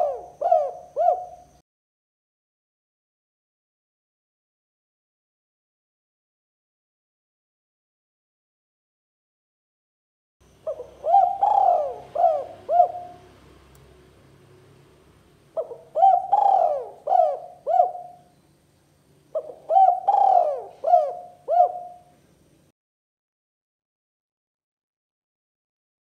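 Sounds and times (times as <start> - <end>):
dove cooing: 0.0 - 1.6, 10.6 - 13.4, 15.6 - 18.3, 19.3 - 22.2.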